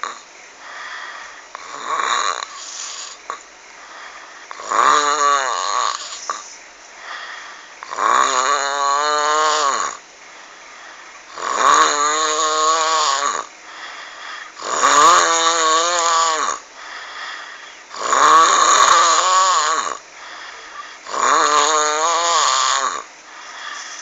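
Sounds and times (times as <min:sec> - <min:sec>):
loud rasping snoring: 0:00.0 - 0:00.3, 0:01.5 - 0:03.4, 0:04.5 - 0:10.0, 0:11.3 - 0:13.5, 0:14.4 - 0:17.1, 0:17.9 - 0:24.0
quiet breathing: 0:00.0 - 0:04.7, 0:05.8 - 0:08.0, 0:09.5 - 0:11.5, 0:13.2 - 0:14.8, 0:16.4 - 0:18.0, 0:19.9 - 0:21.2, 0:22.8 - 0:24.0.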